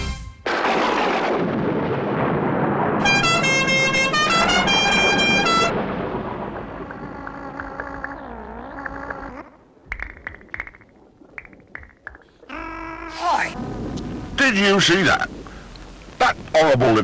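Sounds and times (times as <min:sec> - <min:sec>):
loud rumbling crash: 0:00.4 - 0:07.8
car horn honks: 0:03.0 - 0:05.7.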